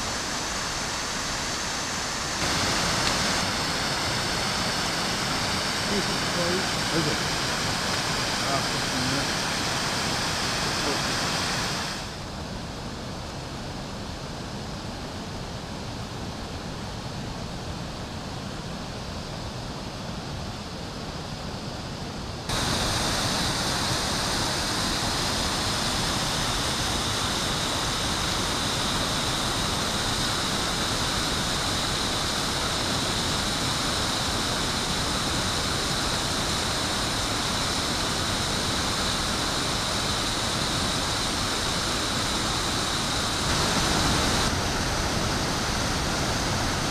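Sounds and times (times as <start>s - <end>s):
waterfall rushing: 0.0s - 12.2s, 22.5s - 46.9s.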